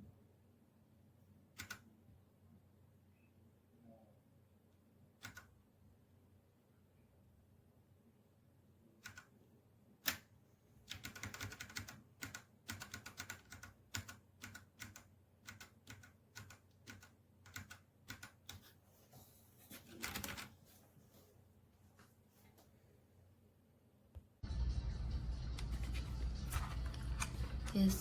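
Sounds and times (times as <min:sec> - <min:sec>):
mechanical keyboard typing: 0:01.6 - 0:01.8, 0:05.2 - 0:05.5, 0:09.0 - 0:09.3, 0:10.9 - 0:18.6, 0:20.0 - 0:20.5.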